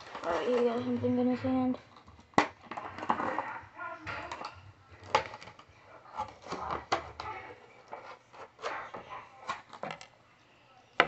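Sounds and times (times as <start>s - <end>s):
plastic packaging clicks and crinkles: 1.8s - 10.2s.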